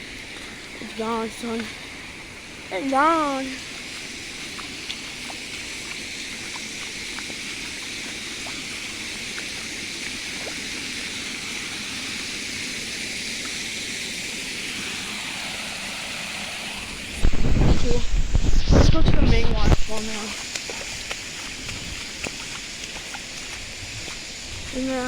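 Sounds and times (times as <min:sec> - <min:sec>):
faint small splashes: 0:00.0 - 0:12.4, 0:18.8 - 0:25.0
floodwater rushing: 0:00.0 - 0:25.0.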